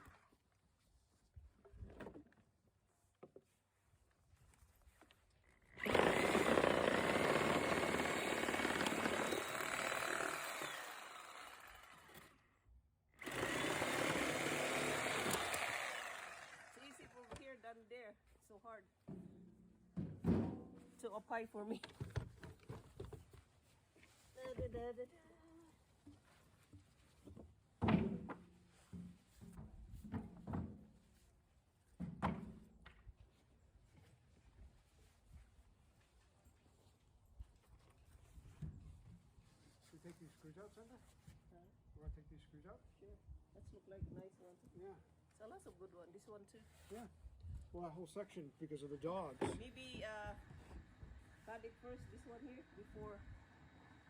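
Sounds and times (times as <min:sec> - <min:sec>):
electric saw cutting wood: 0:05.8 - 0:12.4, 0:13.2 - 0:17.4.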